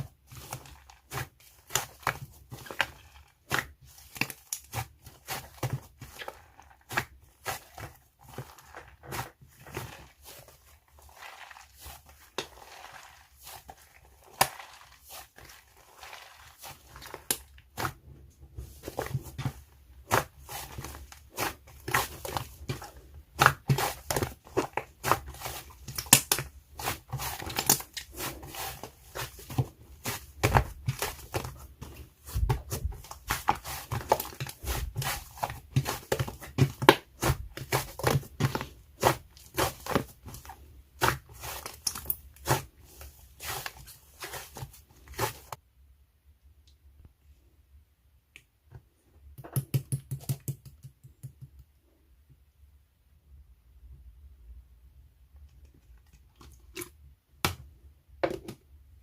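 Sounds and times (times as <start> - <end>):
hands squishing slime: 0.0 - 45.6.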